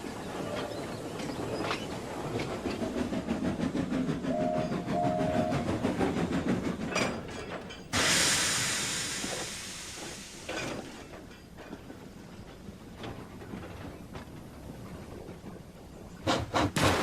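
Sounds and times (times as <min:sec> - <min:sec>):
steam locomotive chuffing: 0:00.0 - 0:12.9, 0:16.2 - 0:16.8
rail clatter: 0:00.0 - 0:17.0
steam hissing: 0:02.0 - 0:11.3
brief tones: 0:04.4 - 0:05.7.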